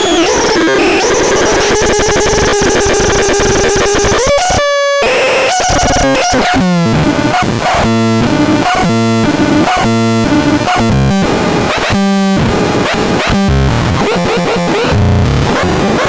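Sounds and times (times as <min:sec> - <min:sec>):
buzzy synthesizer notes: 0:12.2 - 0:16.0.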